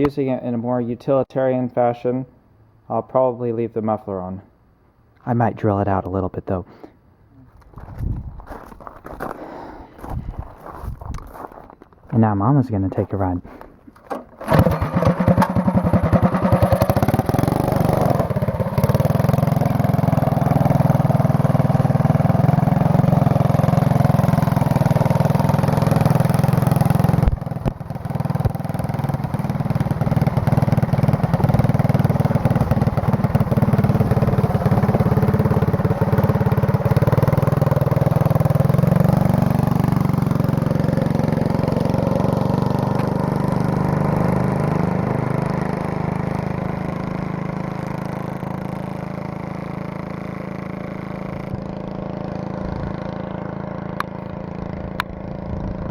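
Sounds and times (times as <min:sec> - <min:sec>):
small engine running: 0:14.1 - 0:55.9.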